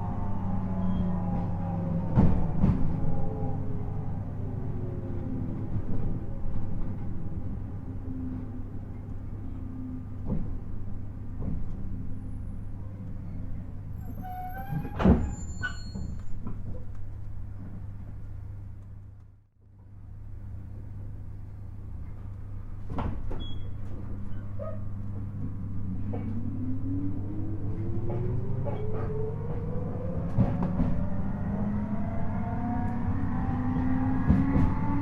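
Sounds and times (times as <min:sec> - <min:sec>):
train running hum: 0:00.0 - 0:14.0, 0:19.8 - 0:35.0
brief squeal: 0:00.8 - 0:01.4, 0:14.0 - 0:16.4, 0:23.4 - 0:24.8
train motor tone rising: 0:25.9 - 0:35.0.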